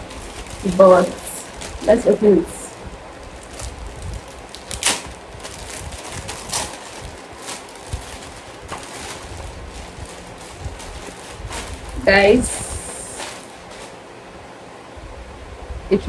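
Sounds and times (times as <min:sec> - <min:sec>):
packaging rustling: 0:00.0 - 0:14.0
sharp crackles and light knocks: 0:02.7 - 0:14.0.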